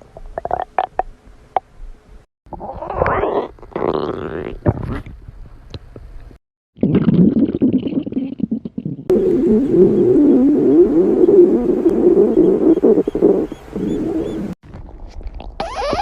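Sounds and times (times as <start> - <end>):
stomach growling: 2.5 - 5.2, 6.8 - 16.0.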